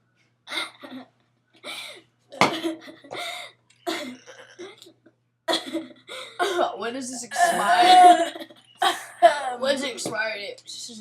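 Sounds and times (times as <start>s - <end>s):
person coughing: 2.4s - 4.8s, 5.5s - 6.7s.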